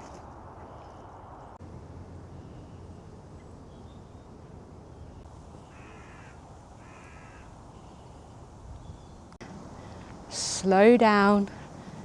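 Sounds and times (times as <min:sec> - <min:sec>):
crow cawing: 0:05.7 - 0:08.0.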